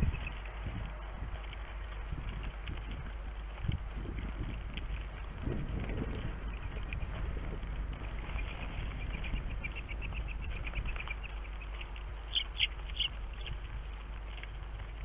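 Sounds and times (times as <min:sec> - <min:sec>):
small birds chirping: 0:00.0 - 0:03.2, 0:06.0 - 0:14.6
steady low rumble: 0:00.0 - 0:15.0.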